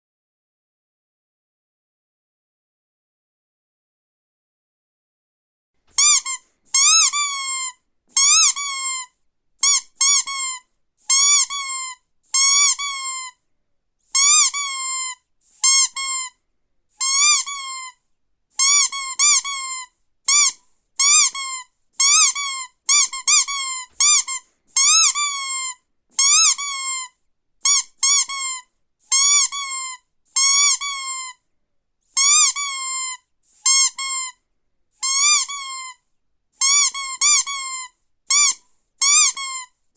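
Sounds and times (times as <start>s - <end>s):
squeaky dog toy squeaking: 5.9s - 13.4s, 14.1s - 16.4s, 17.0s - 18.0s, 18.6s - 31.4s, 32.1s - 34.4s, 35.0s - 36.0s, 36.6s - 39.7s.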